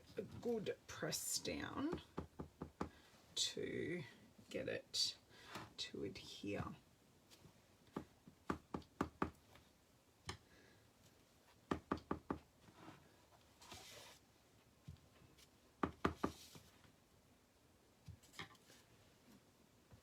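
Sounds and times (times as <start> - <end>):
soft rub: 12.6 - 15.5.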